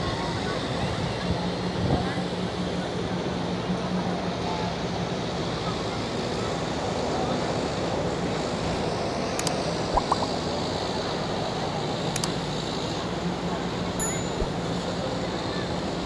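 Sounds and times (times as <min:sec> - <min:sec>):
sharp clicks: 0:09.4 - 0:10.4, 0:12.1 - 0:12.4.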